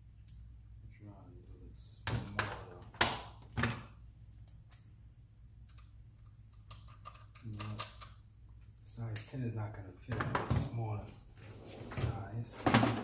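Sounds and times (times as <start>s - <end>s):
hard parts clicking and knocking: 6.5s - 8.2s.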